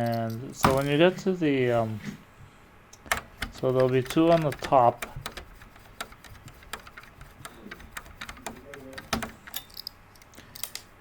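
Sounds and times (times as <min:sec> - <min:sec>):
screwdriver clicking on metal: 0:03.0 - 0:10.8.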